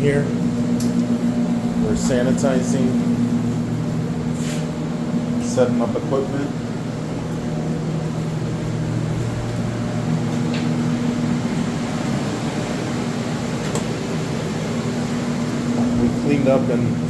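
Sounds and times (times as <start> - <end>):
held low tones: 0.0 - 13.4
air movers humming: 0.0 - 17.0.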